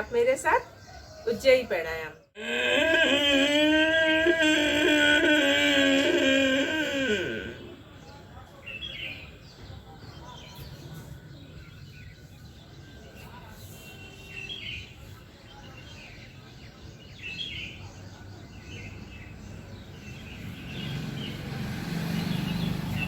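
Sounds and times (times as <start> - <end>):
slow throat breathing: 2.4 - 7.8
small birds chirping: 6.8 - 23.0.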